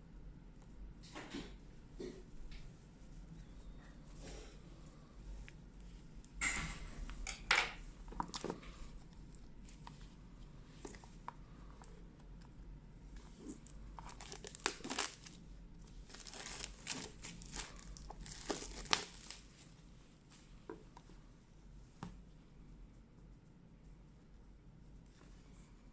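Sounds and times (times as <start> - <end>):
plastic packaging crinkling: 13.2 - 19.7.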